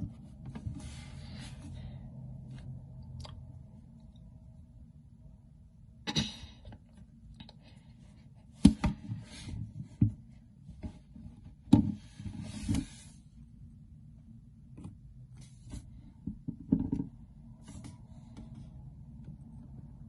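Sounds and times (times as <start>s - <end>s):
objects knocking and clattering: 16.2s - 17.2s.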